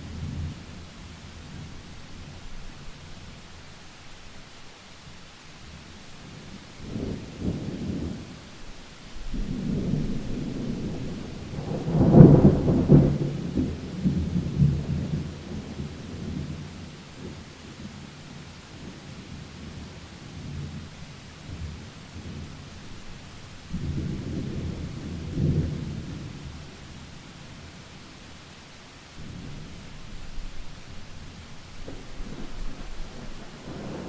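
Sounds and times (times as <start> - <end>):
steady rain: 0.0 - 34.0
thunder rumbling: 9.2 - 17.4, 19.6 - 26.9, 29.2 - 34.0.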